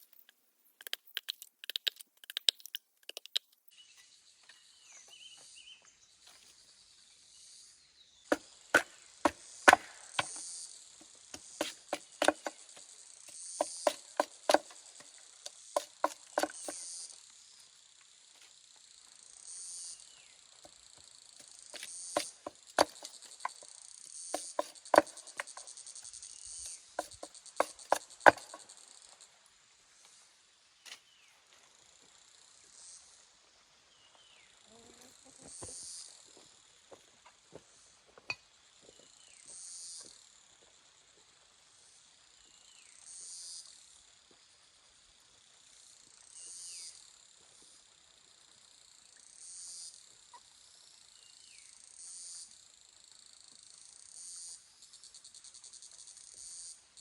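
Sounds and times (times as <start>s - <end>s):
insects chirring: 0.0s - 57.0s
sharp knocks and taps: 0.2s - 3.5s, 8.3s - 10.4s, 11.0s - 16.8s, 21.4s - 23.7s, 24.3s - 25.7s, 27.0s - 28.7s.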